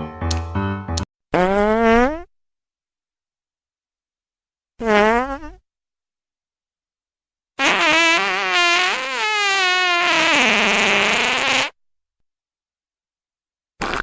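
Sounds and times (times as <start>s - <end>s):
fart sounds: 1.3s - 2.3s, 4.8s - 5.6s, 7.6s - 11.8s, 13.8s - 14.0s.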